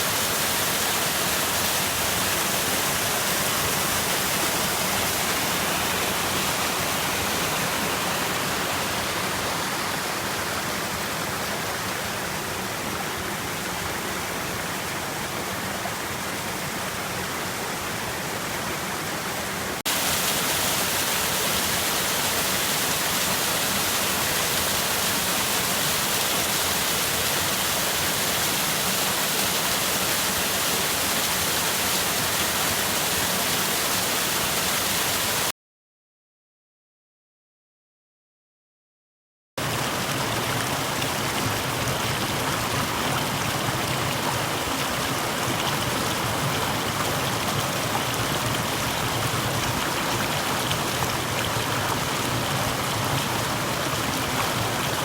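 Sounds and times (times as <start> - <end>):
waterfall rushing: 0.0 - 17.5, 19.2 - 35.5, 39.6 - 55.0.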